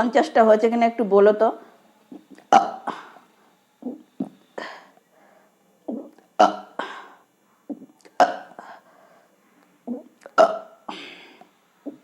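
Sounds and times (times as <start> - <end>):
woman belching: 2.1 - 3.0, 5.9 - 6.8, 7.7 - 8.6, 9.9 - 10.9.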